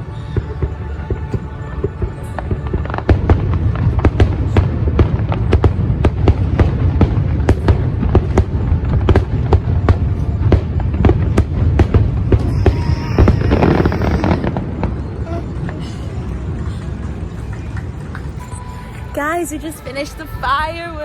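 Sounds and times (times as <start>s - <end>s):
fireworks bangs and cracks: 2.1s - 18.4s.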